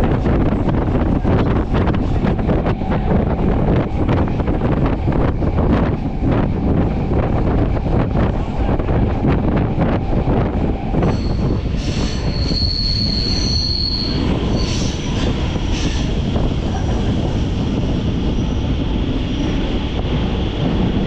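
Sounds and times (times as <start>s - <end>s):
electric train rumbling: 0.0s - 21.0s
high thin wheel squeal: 11.1s - 15.1s.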